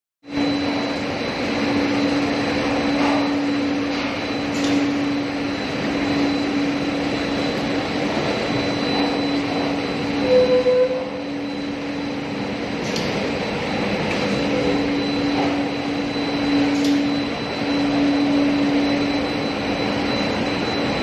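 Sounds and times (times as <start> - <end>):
machinery humming: 0.2 - 21.0.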